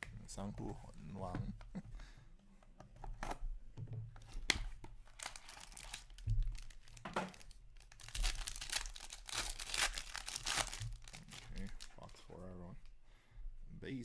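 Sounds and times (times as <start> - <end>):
plastic wrapping crinkling: 4.1 - 13.0.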